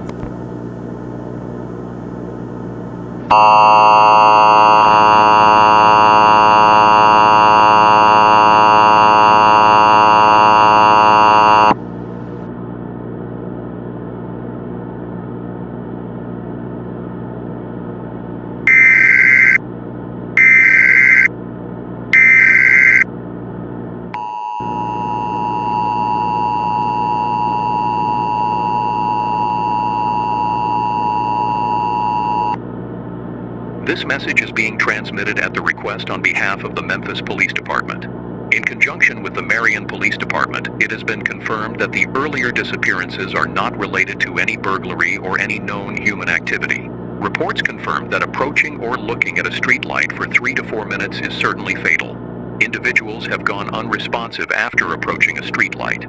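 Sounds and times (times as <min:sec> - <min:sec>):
buzzy alarm tone: 0:03.3 - 0:11.8, 0:18.7 - 0:19.6, 0:20.4 - 0:21.3, 0:22.2 - 0:23.1, 0:24.2 - 0:32.6
data burst tones: 0:18.7 - 0:19.6, 0:20.4 - 0:21.3, 0:22.2 - 0:23.0, 0:24.2 - 0:32.6, 0:33.9 - 0:56.0.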